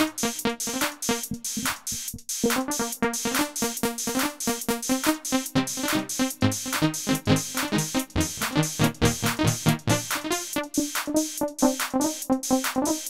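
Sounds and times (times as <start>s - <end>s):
drum machine beat: 0.0s - 13.0s
quick synth notes: 5.8s - 10.8s.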